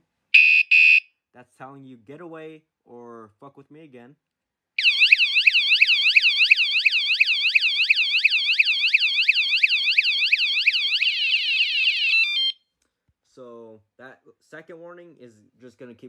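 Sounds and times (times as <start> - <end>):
alarm beeps: 0.4 - 1.0, 4.8 - 7.0, 8.0 - 12.5
bike alarm siren wailing: 0.4 - 1.0, 4.8 - 12.6.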